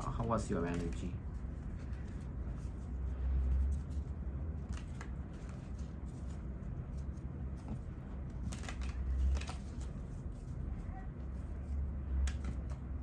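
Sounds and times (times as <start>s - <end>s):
cards being shuffled: 0.6s - 1.1s, 3.5s - 10.5s.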